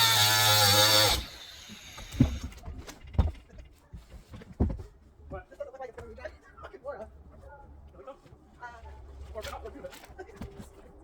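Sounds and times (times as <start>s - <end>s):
reciprocating saw cutting: 0.0s - 2.4s.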